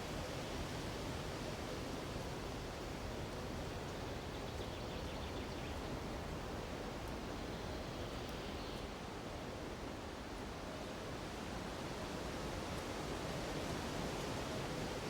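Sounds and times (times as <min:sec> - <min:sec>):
wind through treetops: 0:00.0 - 0:11.1.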